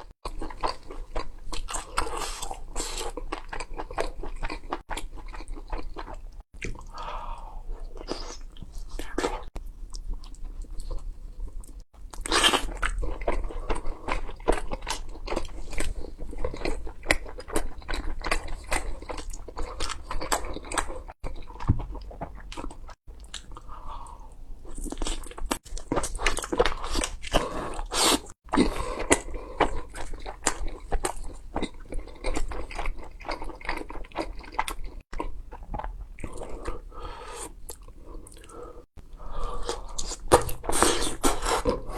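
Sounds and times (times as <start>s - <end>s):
crunchy food bites and chewing: 11.7s - 23.7s, 24.6s - 36.6s.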